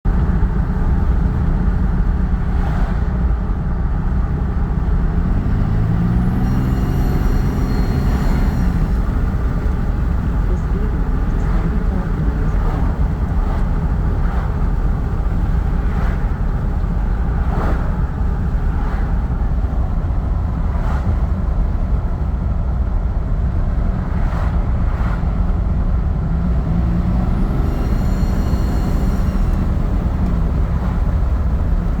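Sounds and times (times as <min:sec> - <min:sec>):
vehicle engine running: 0:00.0 - 0:32.0
high turbo whistle: 0:06.0 - 0:10.0, 0:27.1 - 0:31.4
turbocharger rushing sounds: 0:27.3 - 0:31.4.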